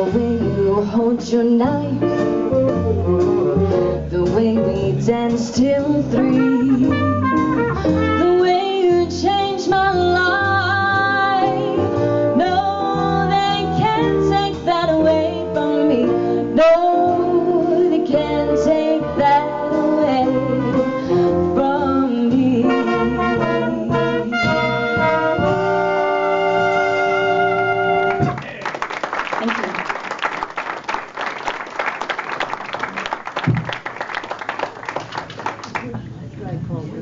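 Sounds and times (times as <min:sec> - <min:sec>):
walking bass: 0:00.0 - 0:25.9
live jazz band with brass: 0:00.0 - 0:28.6.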